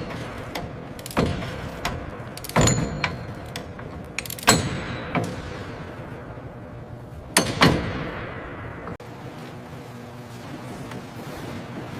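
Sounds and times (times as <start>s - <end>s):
metal tools clanking: 0.0s - 5.4s
steady background hum: 0.0s - 11.9s.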